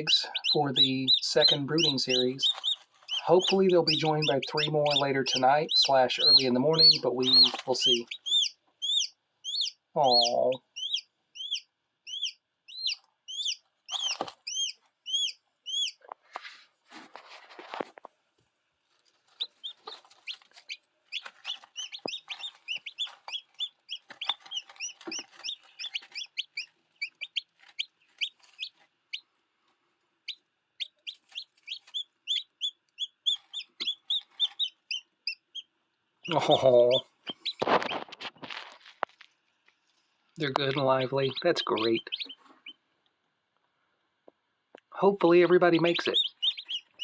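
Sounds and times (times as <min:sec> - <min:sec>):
chicks peeping: 0:00.0 - 0:18.0, 0:18.8 - 0:42.9, 0:44.8 - 0:47.0
rustling scuffle: 0:16.2 - 0:18.0.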